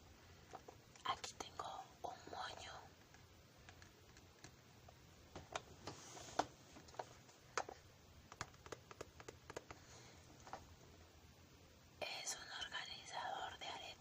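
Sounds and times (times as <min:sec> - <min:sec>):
light irregular clicks and taps: 0:03.0 - 0:04.6, 0:05.3 - 0:09.8.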